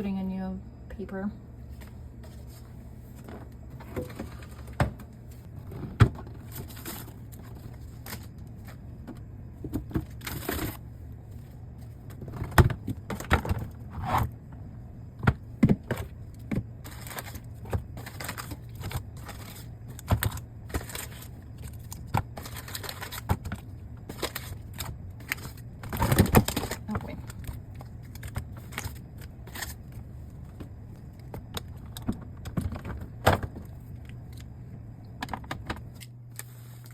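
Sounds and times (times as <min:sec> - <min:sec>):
groceries knocking and clicking: 0:01.8 - 0:36.2
packaging rustling: 0:16.8 - 0:30.0.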